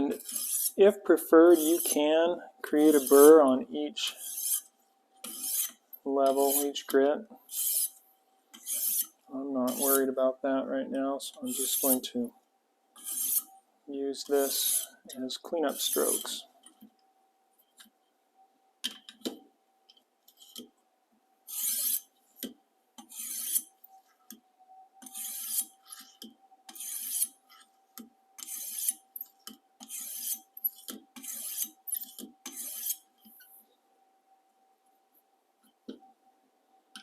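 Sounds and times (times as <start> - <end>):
sharpening stone stroking knife edge: 0.1 - 0.8, 1.6 - 2.0, 4.2 - 6.7, 7.5 - 8.0, 8.6 - 10.0, 13.0 - 13.5, 14.4 - 14.9, 21.5 - 22.1, 23.0 - 23.7, 25.0 - 27.7, 28.4 - 33.1.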